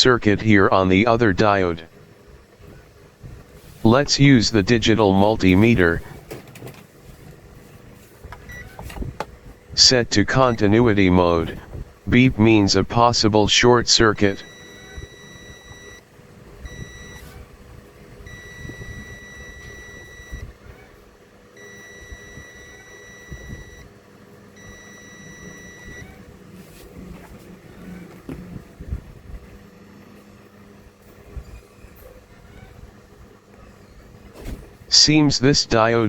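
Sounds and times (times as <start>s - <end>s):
multimeter beeping: 14.2s - 16.0s, 16.6s - 17.4s, 18.3s - 20.5s, 21.6s - 23.9s, 24.6s - 26.2s.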